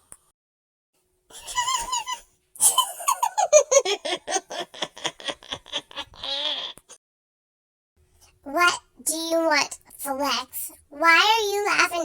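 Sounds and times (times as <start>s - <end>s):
young person giggling: 1.3s - 7.0s.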